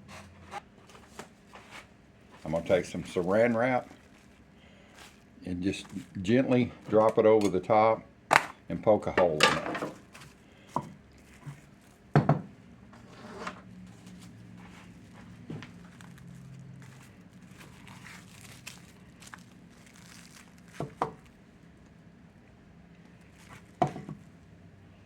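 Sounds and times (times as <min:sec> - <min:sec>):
cling wrap crinkling and tearing: 0:02.3 - 0:07.2, 0:14.0 - 0:22.0.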